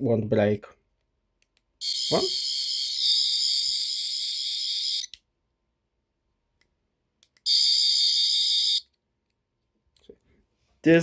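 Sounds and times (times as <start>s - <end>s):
toy high buzzing electronic effect: 1.8s - 5.1s.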